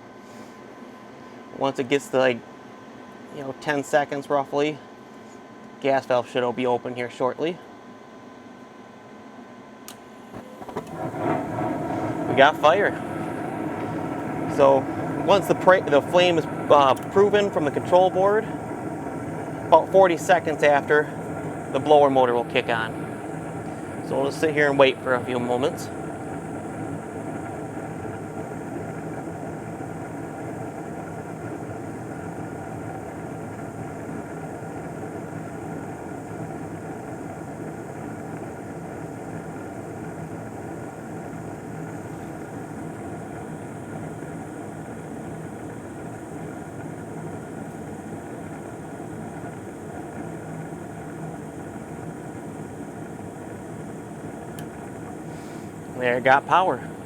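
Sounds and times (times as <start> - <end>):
gas furnace running: 0.0 - 7.2, 7.8 - 57.0
draft inducer motor humming: 9.9 - 57.0.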